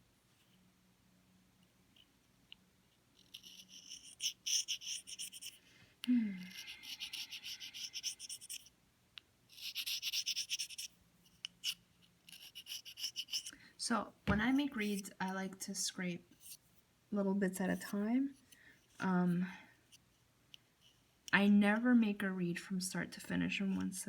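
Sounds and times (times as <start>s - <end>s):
knife scraping cane: 3.2s - 5.6s, 11.6s - 13.5s.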